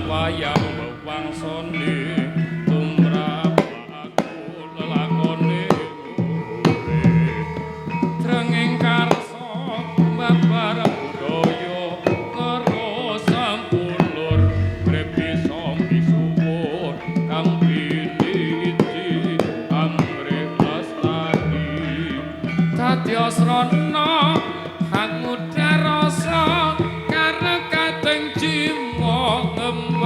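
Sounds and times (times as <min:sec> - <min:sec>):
gamelan playing: 0:00.0 - 0:02.8, 0:14.1 - 0:19.4
hand drum strokes: 0:00.0 - 0:30.0.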